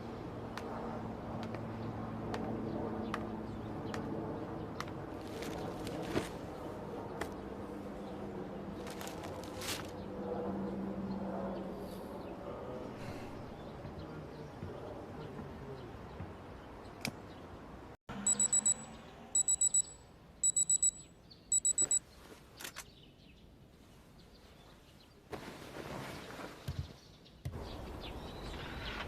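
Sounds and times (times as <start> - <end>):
alarm clock beeping: 18.2 - 22.0.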